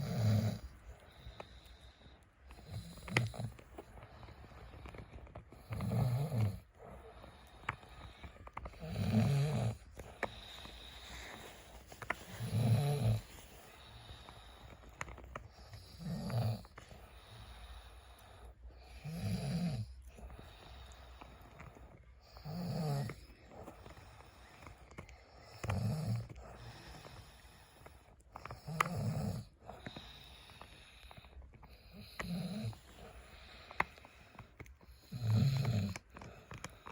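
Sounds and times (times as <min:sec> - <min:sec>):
man snoring: 0:00.0 - 0:00.7, 0:02.6 - 0:03.6, 0:05.6 - 0:06.6, 0:08.8 - 0:11.4, 0:12.2 - 0:13.3, 0:15.8 - 0:18.0, 0:18.8 - 0:21.1, 0:22.4 - 0:23.2, 0:25.5 - 0:27.6, 0:28.5 - 0:31.2, 0:31.8 - 0:33.8, 0:34.9 - 0:36.0.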